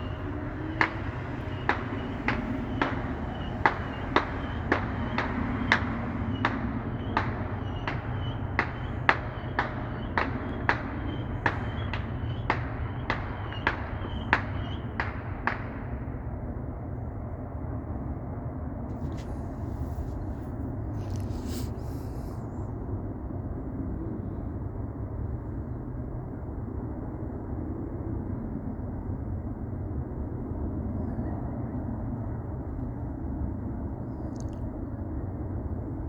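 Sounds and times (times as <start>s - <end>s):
railroad crossing bell ringing: 0.0s - 15.0s
low rumble: 0.0s - 16.3s.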